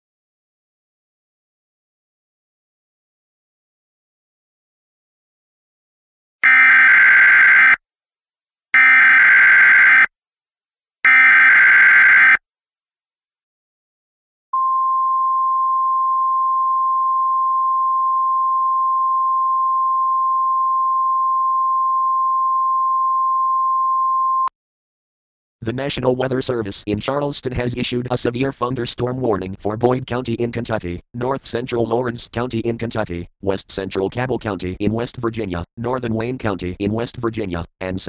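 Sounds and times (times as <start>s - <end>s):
steady warning alarm tone: 6.4s - 7.8s, 8.8s - 10.1s, 11.1s - 12.4s.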